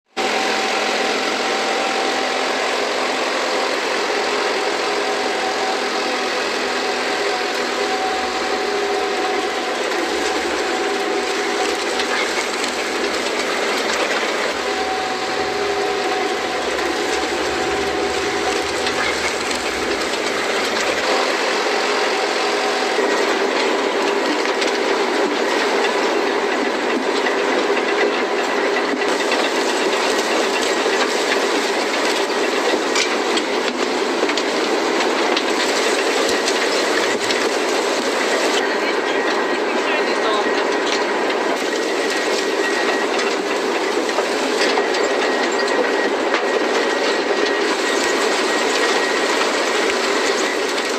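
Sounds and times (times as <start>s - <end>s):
harvesting machinery engine drone: 0.1s - 50.9s
held tones: 4.8s - 21.4s.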